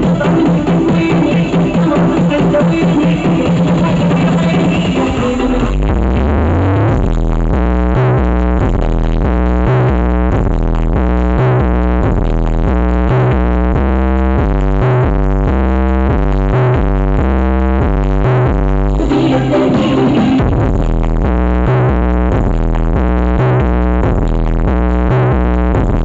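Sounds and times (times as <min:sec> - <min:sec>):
electronic dance music: 0:00.0 - 0:11.0, 0:17.8 - 0:26.0.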